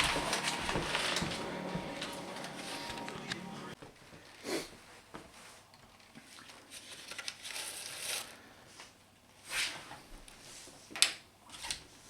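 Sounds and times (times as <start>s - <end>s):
wood rustling and scraping: 0.0s - 3.8s.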